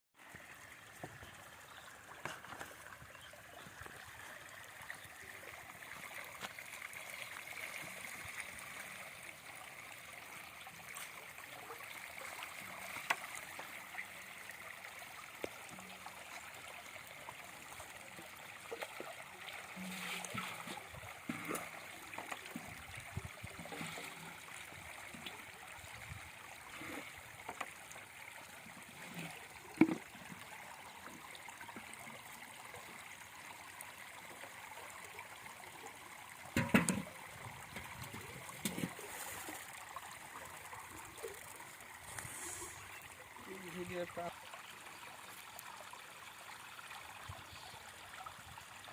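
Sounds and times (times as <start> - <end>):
water trickling: 0.2 - 48.9
small splashes and knocks: 0.3 - 5.2, 10.8 - 14.1, 17.5 - 32.2, 36.5 - 42.4.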